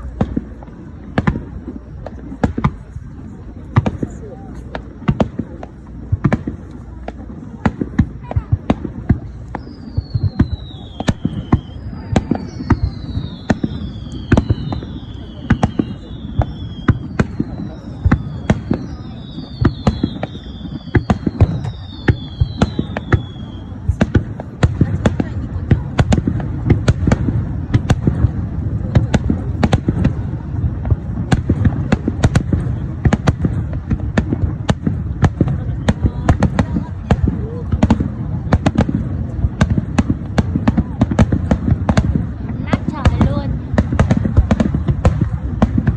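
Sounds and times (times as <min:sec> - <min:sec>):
continuous low rumble: 0:00.0 - 0:45.9
whistling firework shells: 0:00.0 - 0:45.9.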